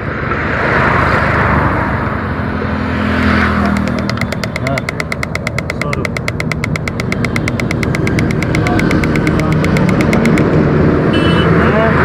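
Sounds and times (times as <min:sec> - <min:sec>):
rapid even ticking: 0:03.7 - 0:10.6.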